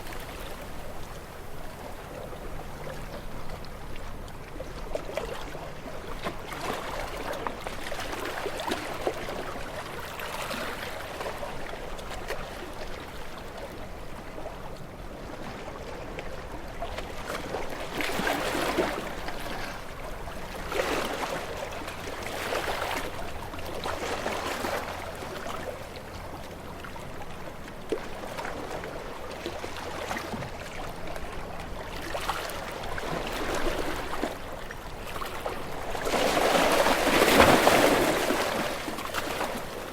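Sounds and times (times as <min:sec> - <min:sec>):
waves washing against rocks: 0:35.1 - 0:39.9.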